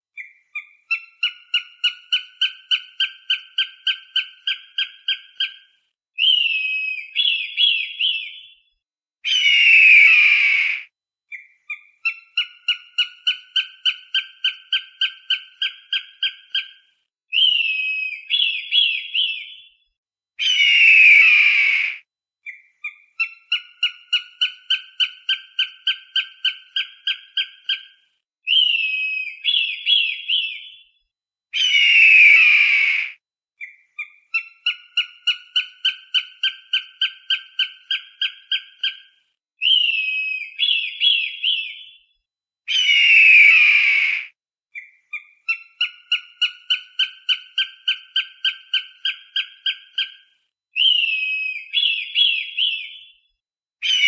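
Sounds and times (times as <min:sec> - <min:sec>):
hawk calling: 0:09.3 - 0:16.0, 0:20.4 - 0:22.0, 0:31.6 - 0:38.4, 0:42.7 - 0:49.8.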